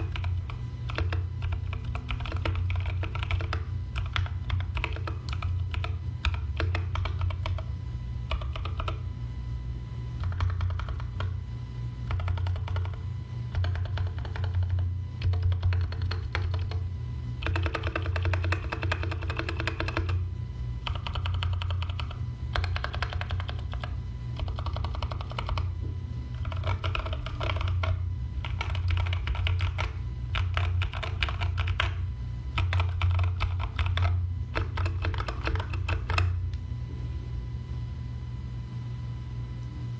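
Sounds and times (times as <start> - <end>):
steady low hum: 0.0 - 39.9.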